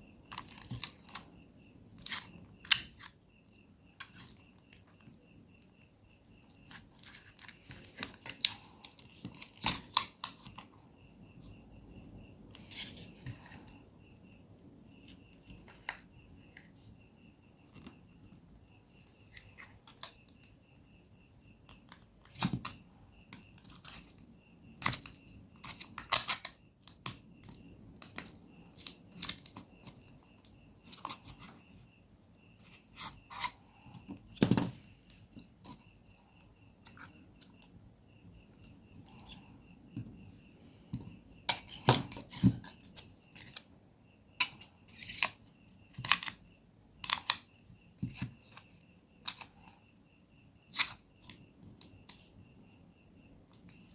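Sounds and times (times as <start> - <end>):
plastic parts clicking and snapping: 2.0 - 3.1, 24.8 - 30.1, 47.0 - 47.4.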